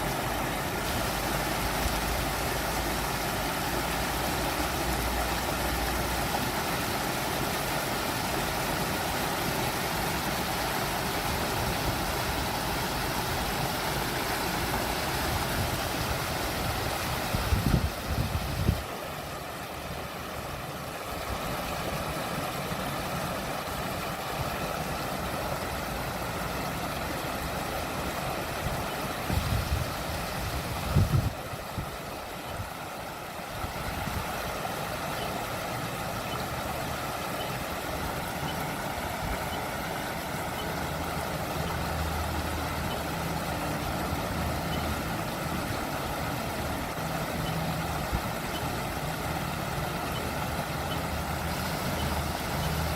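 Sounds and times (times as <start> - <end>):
water running and splashing: 0.0 - 52.9.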